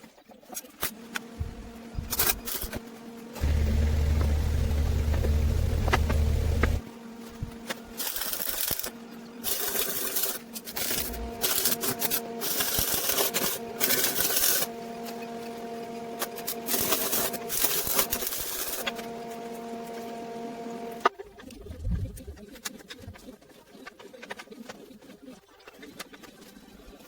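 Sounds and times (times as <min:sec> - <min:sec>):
machinery hum: 0:00.9 - 0:09.5, 0:10.7 - 0:23.2.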